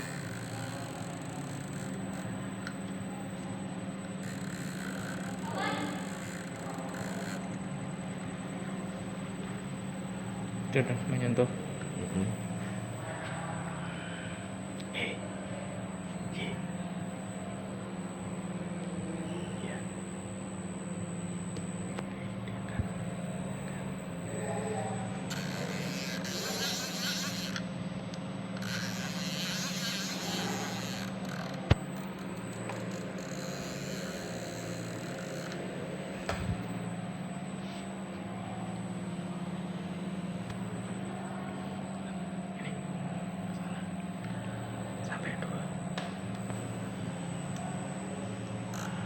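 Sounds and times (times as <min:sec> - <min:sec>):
machine tool humming: 0:00.0 - 0:07.7, 0:25.0 - 0:37.3
machine humming: 0:00.0 - 0:13.1, 0:15.2 - 0:45.0.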